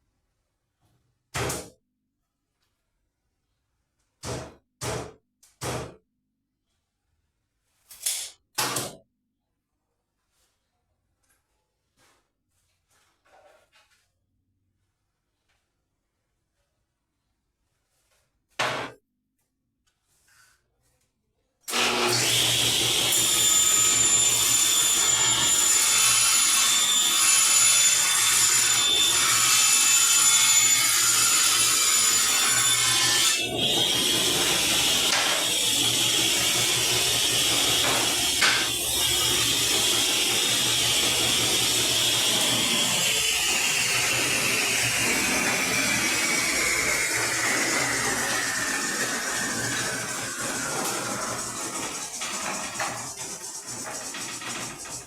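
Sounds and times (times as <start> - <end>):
power saw motor whine: 21.7 - 55.0
saw rasping through board: 21.7 - 55.0.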